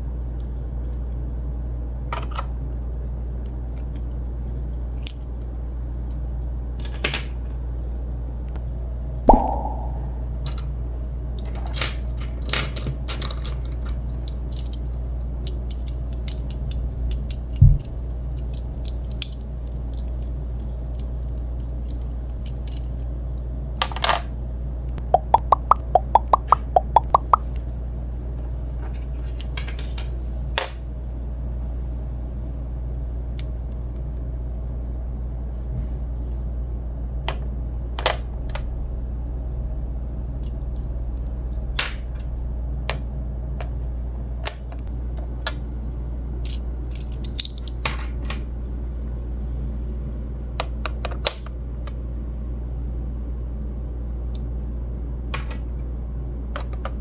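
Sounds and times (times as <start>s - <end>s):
steady low hum: 7.4s - 12.6s, 13.5s - 57.0s
plastic toy pieces clicking: 12.7s - 23.1s.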